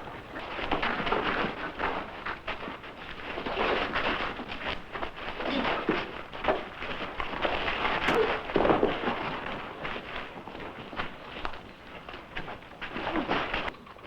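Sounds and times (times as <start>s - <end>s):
fistfight blows and scuffling: 0.0s - 13.7s.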